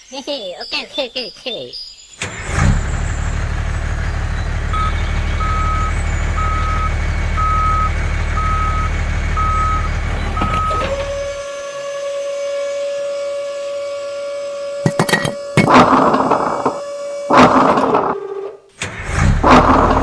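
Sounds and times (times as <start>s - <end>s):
truck reversing alarm beeping: 2.2s - 12.7s
truck engine drone: 2.2s - 20.0s.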